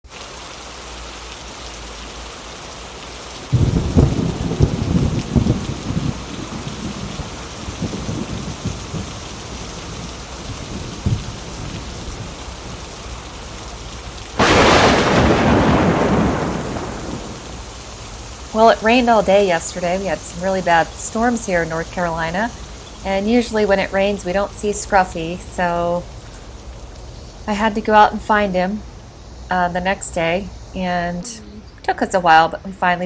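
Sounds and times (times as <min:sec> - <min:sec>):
heavy rain: 0:00.0 - 0:29.4
loud thunderclap: 0:03.5 - 0:09.2, 0:14.4 - 0:17.8
thunder rumbling: 0:03.5 - 0:13.2, 0:14.4 - 0:17.9.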